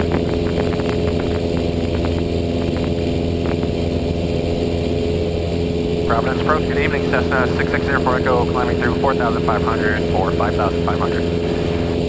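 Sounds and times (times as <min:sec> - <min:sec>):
propeller plane engine droning: 0:00.0 - 0:12.0.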